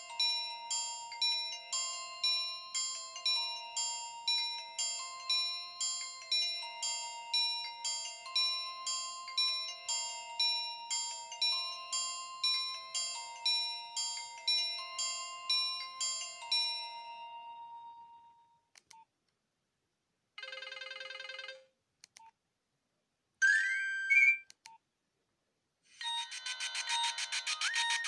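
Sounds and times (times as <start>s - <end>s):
phone ringtone melodies: 0.0s - 18.5s, 20.4s - 21.7s, 23.4s - 24.4s, 26.0s - 28.0s
fast-pulsing ringtone: 20.4s - 21.7s, 23.4s - 24.4s, 26.0s - 28.0s
short phone beeps: 23.4s - 24.5s.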